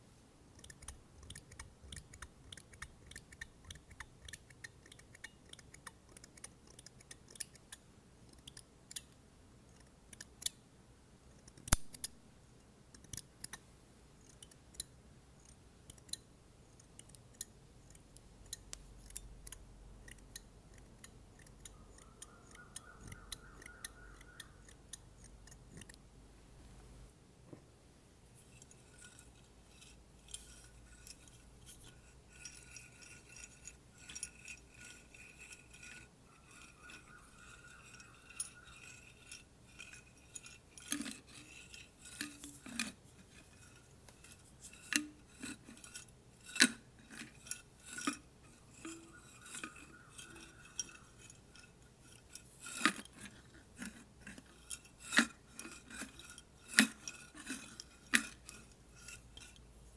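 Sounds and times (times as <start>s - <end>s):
faint steady ringing: 28.1s - 59.9s.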